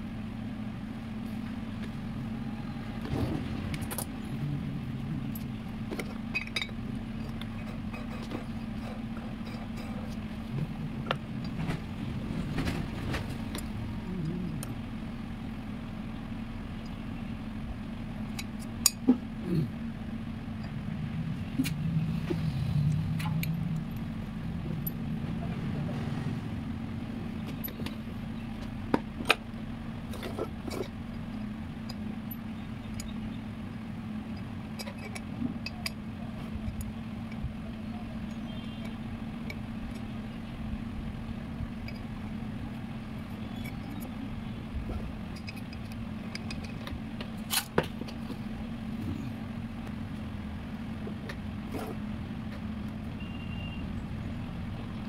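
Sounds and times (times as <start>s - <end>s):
steady background hum: 0.0s - 55.0s
metal tools clinking and knocking: 5.3s - 10.2s.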